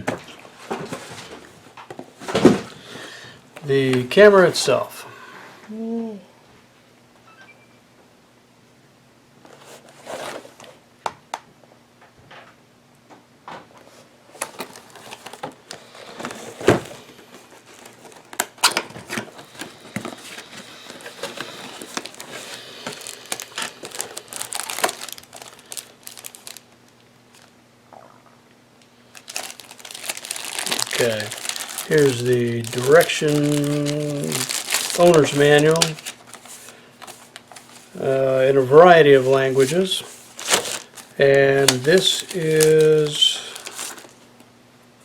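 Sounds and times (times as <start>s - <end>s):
packaging crinkling and rustling: 13.9s - 27.6s, 29.1s - 44.5s.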